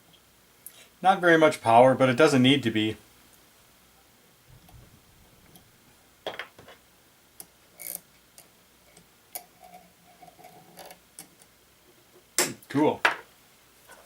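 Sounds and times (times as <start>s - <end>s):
small metal parts clicking: 7.8s - 8.5s.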